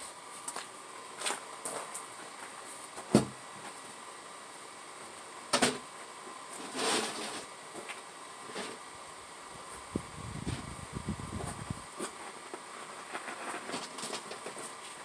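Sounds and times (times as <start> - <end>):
scraping rustle: 6.5 - 8.9, 9.6 - 15.0.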